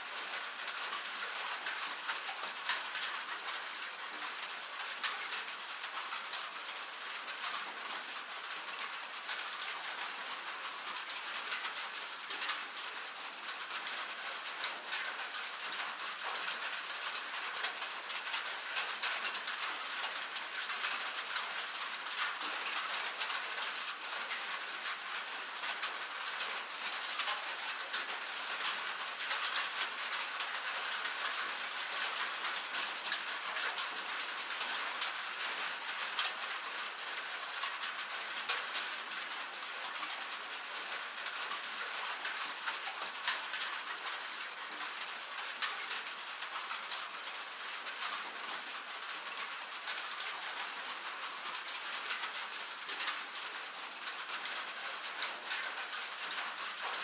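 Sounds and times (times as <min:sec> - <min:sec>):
rain on a metal roof: 0:00.0 - 0:57.0.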